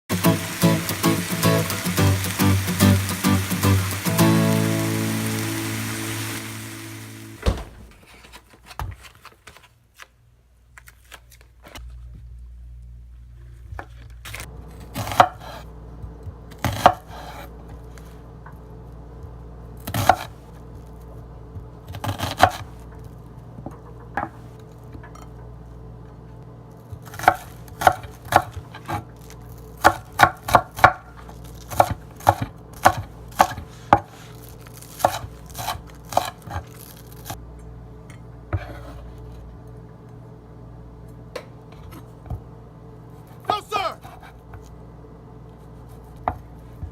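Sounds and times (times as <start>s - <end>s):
steady low hum: 11.8s - 46.9s
knife chopping on cutting board: 31.7s - 34.1s.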